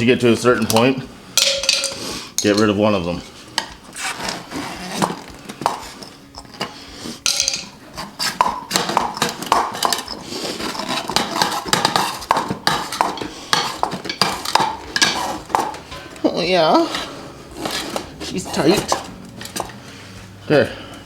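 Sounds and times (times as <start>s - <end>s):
tire irons clinking on rim: 0.6s - 3.0s, 7.3s - 7.8s.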